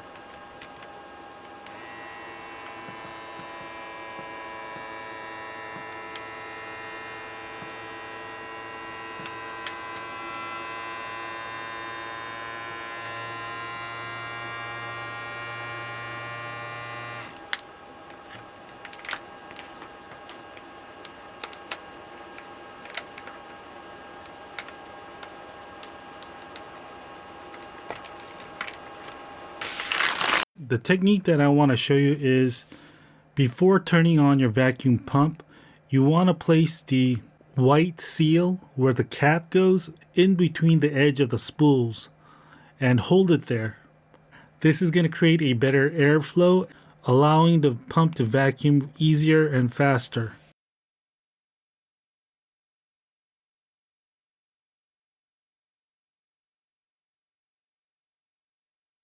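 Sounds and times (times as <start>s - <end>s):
vacuum pump whining: 0.0s - 30.5s.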